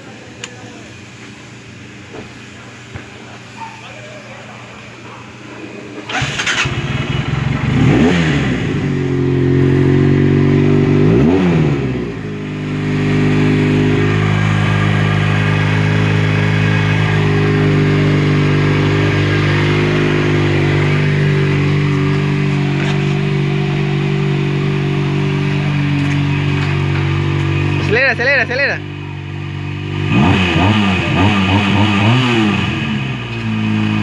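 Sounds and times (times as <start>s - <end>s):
motorcycle engine revving and idling: 6.0s - 34.0s.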